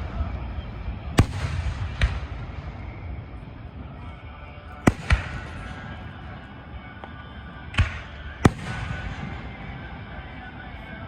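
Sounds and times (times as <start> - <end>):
fireworks booming: 1.0 - 3.4, 4.9 - 6.4, 7.7 - 10.1.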